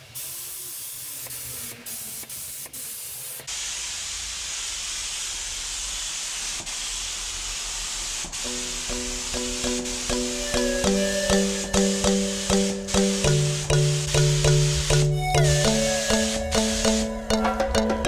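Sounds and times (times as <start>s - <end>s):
spray gun hissing: 0.0s - 17.1s
music: 8.5s - 18.0s.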